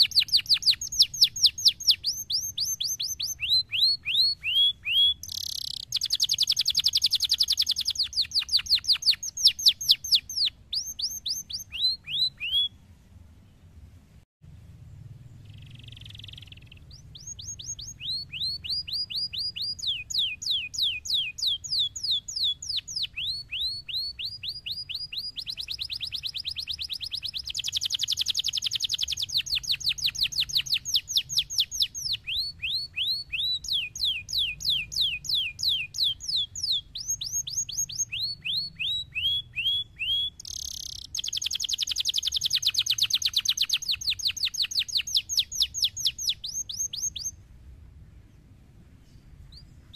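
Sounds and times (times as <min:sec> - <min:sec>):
canary singing trills: 0:00.0 - 0:13.8, 0:15.0 - 0:47.4, 0:48.3 - 0:49.9.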